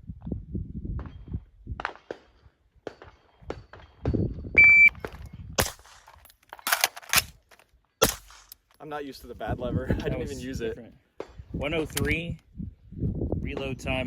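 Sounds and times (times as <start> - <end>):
shot timer beep: 4.6 - 5.0
metallic rifle reloading clatter: 5.8 - 7.7
rifle shot: 8.0 - 8.6.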